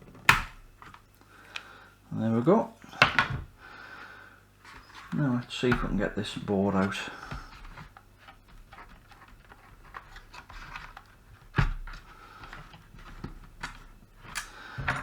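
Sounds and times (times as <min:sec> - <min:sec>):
clicks and knocks of plastic housing: 0:04.7 - 0:15.0.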